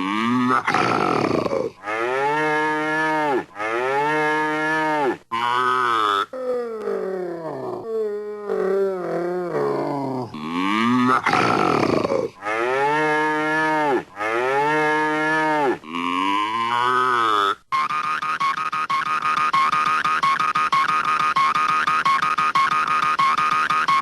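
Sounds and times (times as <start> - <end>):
wavering animal-like cartoon calls: 15.6 - 24.0.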